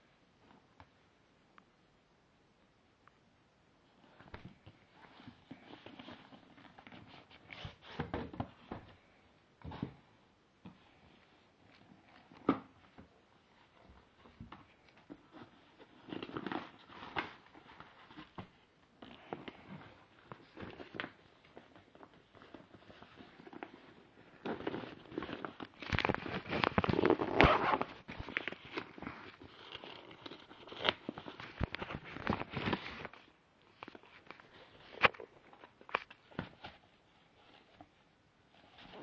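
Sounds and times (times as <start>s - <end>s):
packaging rustling and crackling: 14.2s - 37.8s.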